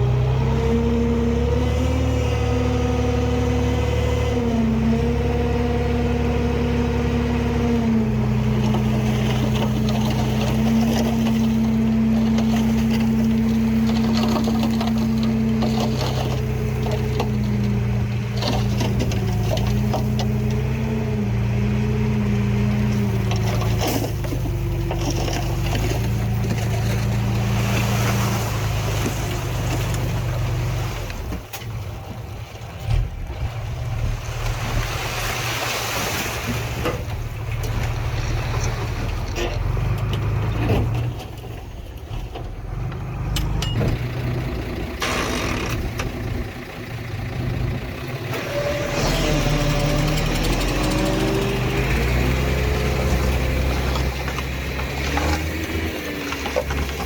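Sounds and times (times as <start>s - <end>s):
heavy diesel machinery running: 0.0s - 57.0s
metal clanks and knocks: 43.3s - 44.1s.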